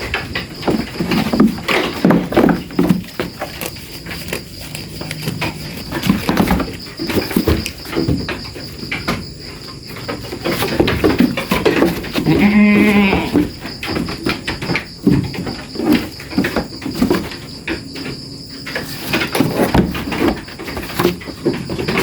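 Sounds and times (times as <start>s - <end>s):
knocks and thuds in pen: 0.0s - 22.0s
goat bleating: 12.2s - 13.4s.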